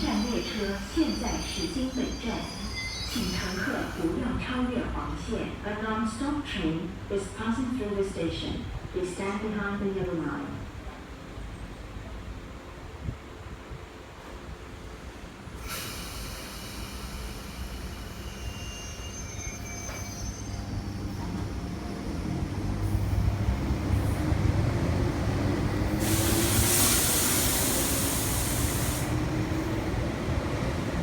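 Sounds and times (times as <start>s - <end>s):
high wheel squeals: 0.0s - 4.1s, 17.6s - 22.4s
train passing at speed: 0.0s - 9.2s, 9.8s - 31.0s.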